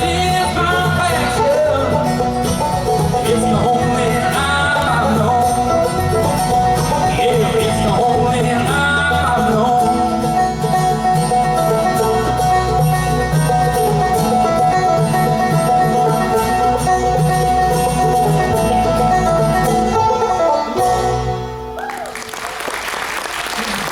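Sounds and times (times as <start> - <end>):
bluegrass band with banjo and guitar: 0.0 - 23.9
audience applause: 21.8 - 23.9.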